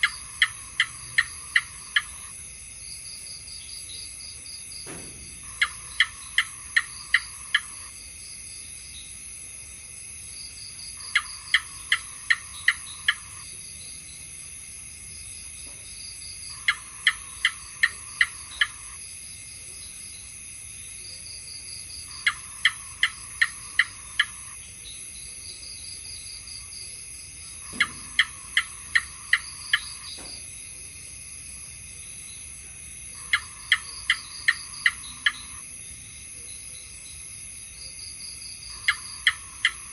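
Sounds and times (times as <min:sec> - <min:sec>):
gecko chirping: 0:00.0 - 0:02.3, 0:05.4 - 0:07.9, 0:11.0 - 0:13.5, 0:16.5 - 0:19.0, 0:22.0 - 0:24.9, 0:27.4 - 0:30.2, 0:33.2 - 0:35.6, 0:38.7 - 0:39.9.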